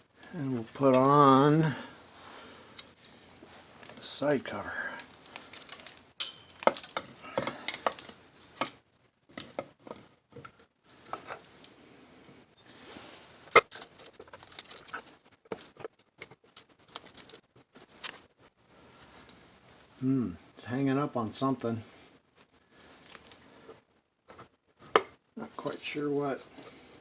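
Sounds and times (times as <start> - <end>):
metal clicks and scrapes: 5.0 - 11.5.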